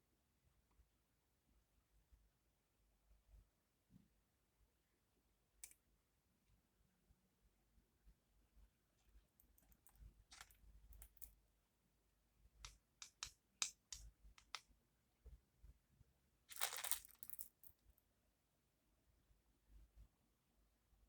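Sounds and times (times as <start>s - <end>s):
beads clicking together: 12.6s - 14.7s, 16.5s - 17.7s
beads rattling: 16.5s - 17.7s.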